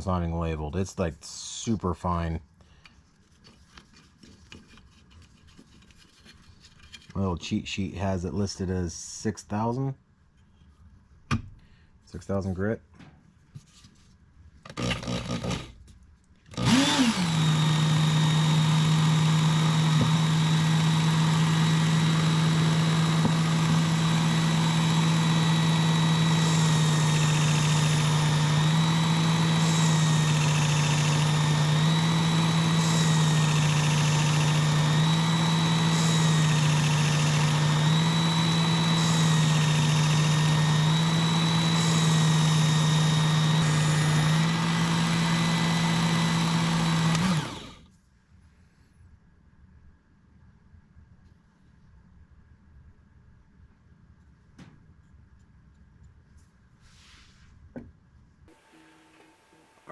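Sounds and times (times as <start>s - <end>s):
belt sharpener motor humming: 16.5s - 47.8s, 58.5s - 59.9s.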